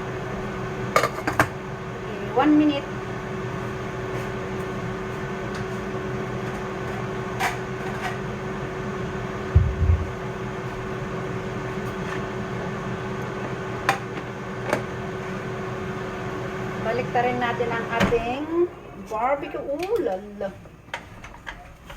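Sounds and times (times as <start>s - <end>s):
steady electric hum: 0.0s - 21.9s
dull low thump: 9.5s - 10.2s.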